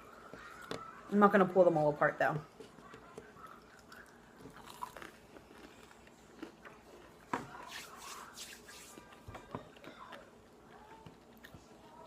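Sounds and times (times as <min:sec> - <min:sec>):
chewing crunchy chips: 0:03.4 - 0:07.8.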